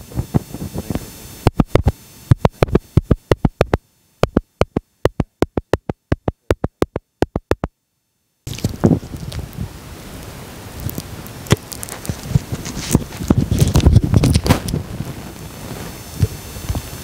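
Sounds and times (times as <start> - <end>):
microphone being tapped: 1.5 - 7.7.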